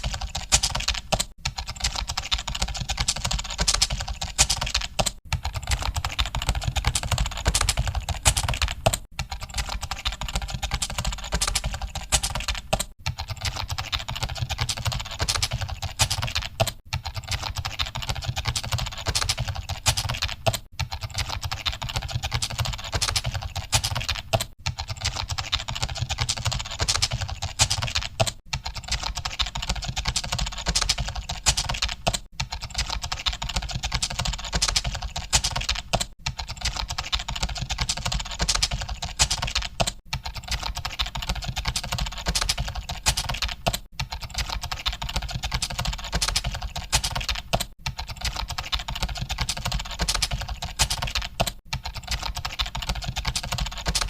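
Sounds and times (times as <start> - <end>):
keyboard typing clatter: 0.0 - 54.0.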